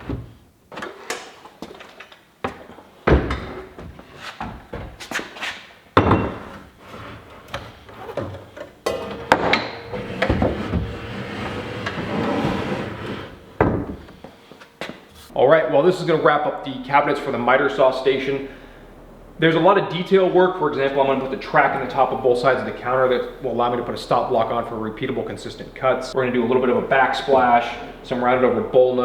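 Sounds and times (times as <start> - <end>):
wooden knocks and thuds: 2.4 - 5.0, 13.6 - 14.1
drawers scraping and sliding: 6.3 - 13.6.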